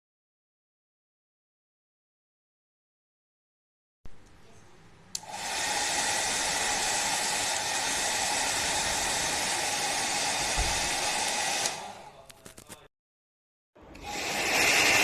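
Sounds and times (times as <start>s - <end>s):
hair dryer switch click: 5.2s - 5.4s, 7.5s - 7.7s, 11.6s - 11.9s
hair dryer blowing air: 5.2s - 12.1s, 14.0s - 15.0s.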